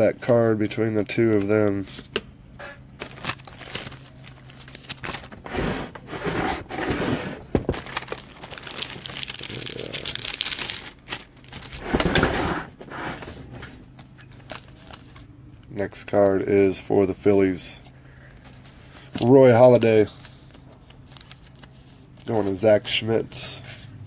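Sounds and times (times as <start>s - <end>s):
packaging crinkling and rustling: 3.0s - 5.4s, 7.4s - 12.2s, 13.8s - 15.3s, 18.4s - 22.6s.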